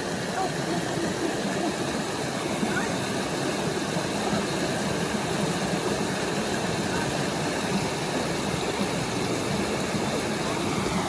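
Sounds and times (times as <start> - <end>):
creek water rushing: 0.0 - 11.0.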